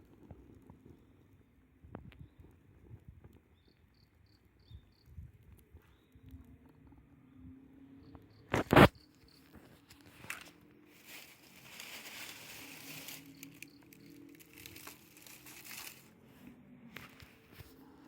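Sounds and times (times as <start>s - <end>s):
crinkling rustling handling noise: 8.6s - 18.0s.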